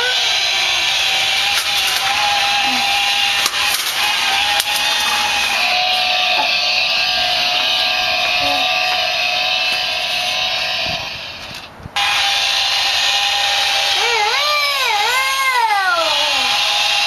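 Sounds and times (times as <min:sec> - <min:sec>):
wavering pitched tone: 0:00.0 - 0:11.5
chainsaw-like buzzing: 0:00.0 - 0:17.0.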